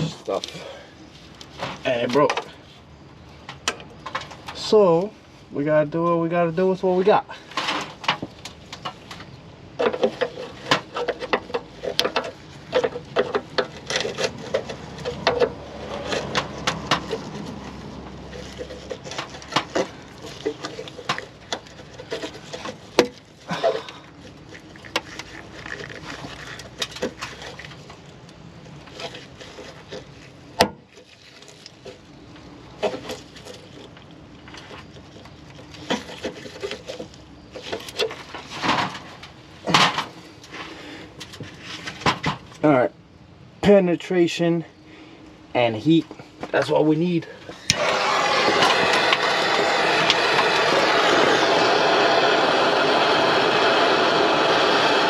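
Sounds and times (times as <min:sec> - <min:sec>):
scraping and handling noise: 0:00.0 - 0:05.4, 0:07.0 - 0:42.8.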